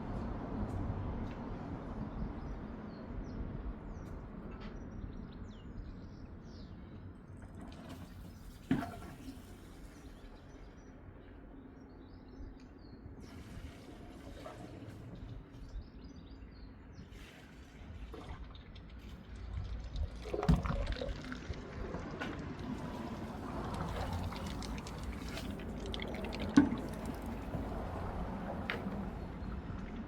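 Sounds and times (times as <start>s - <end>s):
water trickling through drain: 17.4s - 30.0s.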